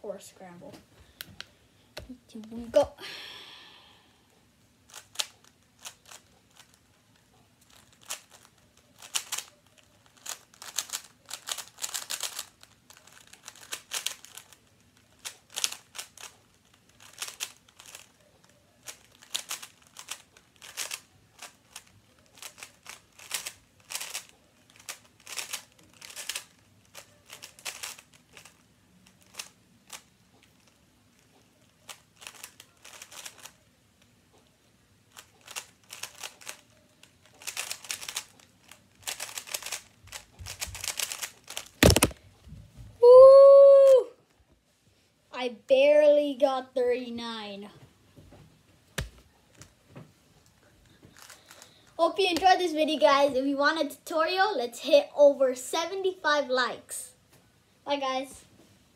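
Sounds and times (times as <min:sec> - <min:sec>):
puzzle cube plastic clicks: 0:04.9 - 0:06.8, 0:07.6 - 0:30.8, 0:31.6 - 0:33.7, 0:35.1 - 0:42.2.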